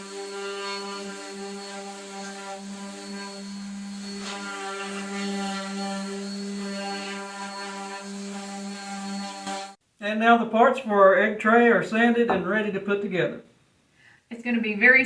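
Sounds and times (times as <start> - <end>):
electric sander running: 0.0 - 9.8.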